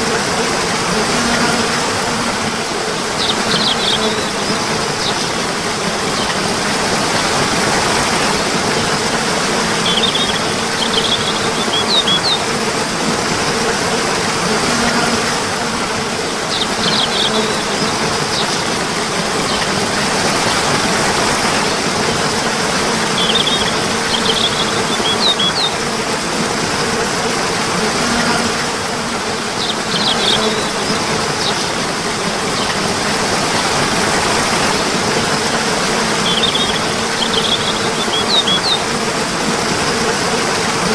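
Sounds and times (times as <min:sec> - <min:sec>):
flowing water: 0:00.0 - 0:40.9
small birds chirping: 0:03.0 - 0:06.9, 0:08.0 - 0:12.6, 0:16.3 - 0:20.0, 0:21.3 - 0:25.8, 0:29.6 - 0:31.8, 0:34.4 - 0:39.0.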